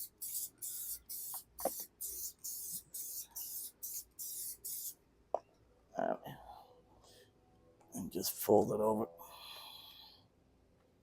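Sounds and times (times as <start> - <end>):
aerosol spray hissing: 0.0 - 5.0.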